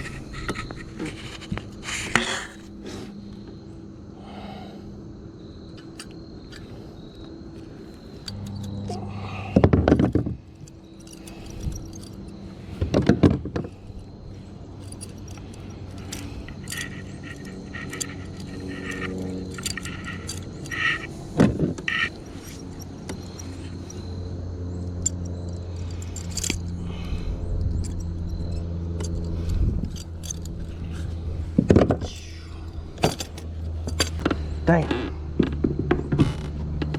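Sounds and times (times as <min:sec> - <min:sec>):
fishing reel grinding: 0:14.8 - 0:24.1.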